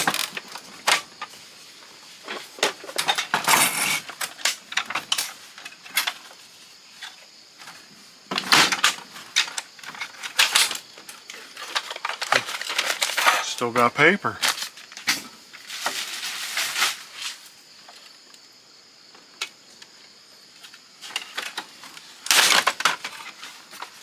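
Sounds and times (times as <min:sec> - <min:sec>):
plastic and metal parts clattering: 0:00.0 - 0:01.1, 0:02.2 - 0:06.3, 0:07.0 - 0:13.7, 0:21.0 - 0:24.0.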